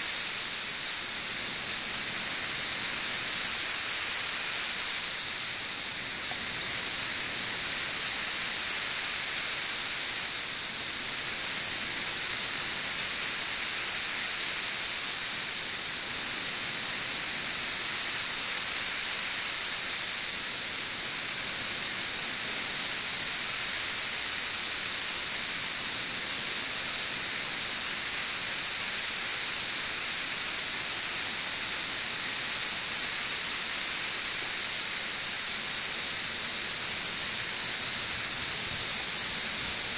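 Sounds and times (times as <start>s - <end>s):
cicadas chorus: 0.0s - 39.9s.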